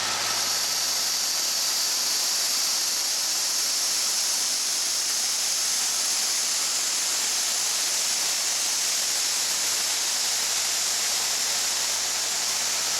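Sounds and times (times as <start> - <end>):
combine harvester hiss: 0.0 - 3.5.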